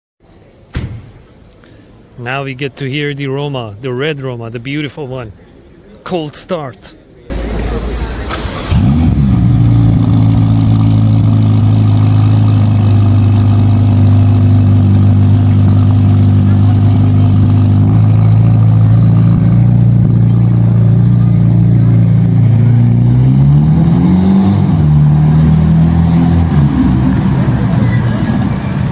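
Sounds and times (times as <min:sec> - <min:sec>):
car engine starting and idling: 0:07.3 - 0:28.9.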